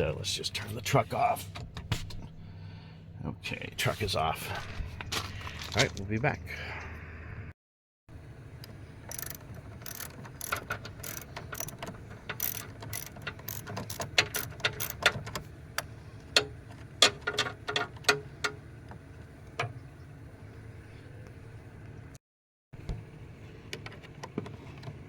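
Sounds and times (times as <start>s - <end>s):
ratchet wrench clicking: 9.1s - 15.2s.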